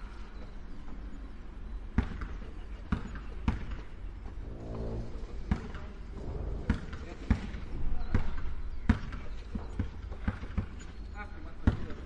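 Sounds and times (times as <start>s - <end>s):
basketball bouncing on a court: 2.0s - 3.9s, 5.5s - 5.9s, 6.6s - 10.8s, 11.5s - 12.0s.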